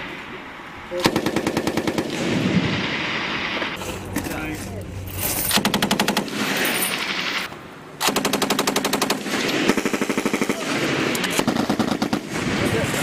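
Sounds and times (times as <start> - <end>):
machine guns firing bursts: 1.0 - 3.8, 5.5 - 13.0.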